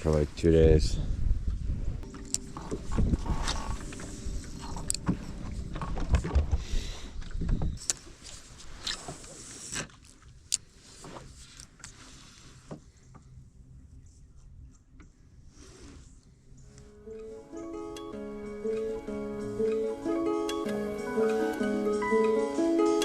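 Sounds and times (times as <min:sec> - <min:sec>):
low rumble: 0:00.9 - 0:07.8
fishing gear clattering in boat: 0:02.1 - 0:07.8.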